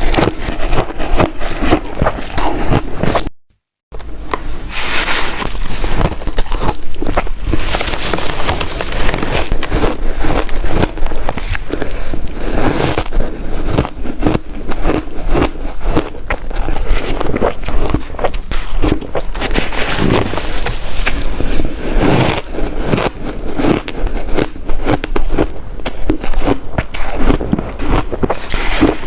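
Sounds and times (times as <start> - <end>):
chewing crunchy ice: 0.0 - 3.3, 4.7 - 29.0.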